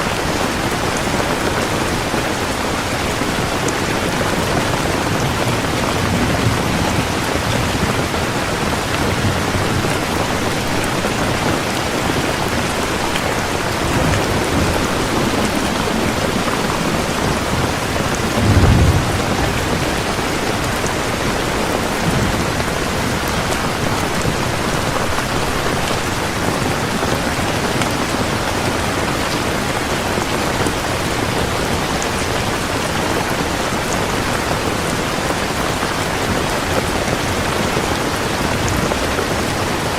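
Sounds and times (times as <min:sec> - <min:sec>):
heavy rain falling: 0:00.0 - 0:39.9
thunder rumble: 0:03.3 - 0:28.0.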